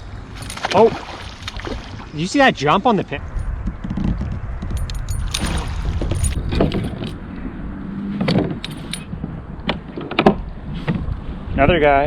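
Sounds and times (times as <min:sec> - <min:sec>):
steady low rumble: 0:00.0 - 0:07.8
fishing tackle clinking and rattling: 0:00.3 - 0:01.2, 0:04.7 - 0:07.3, 0:08.6 - 0:09.1.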